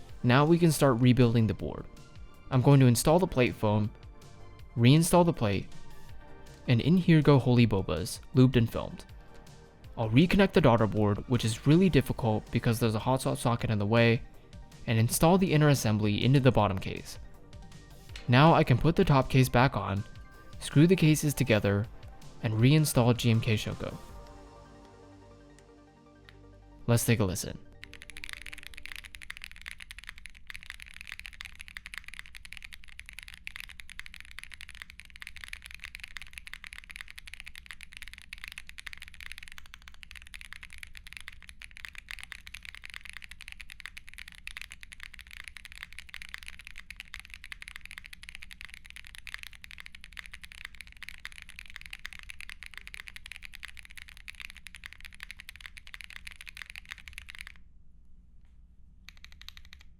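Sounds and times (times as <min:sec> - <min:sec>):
fast typing on mechanical keyboard: 0:27.7 - 0:57.6, 0:59.1 - 0:59.9.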